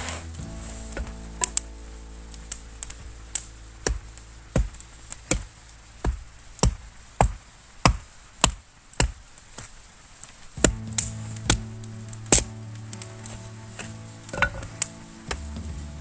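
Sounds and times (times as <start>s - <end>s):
firewood being chopped: 2.9s - 9.8s, 10.5s - 16.0s.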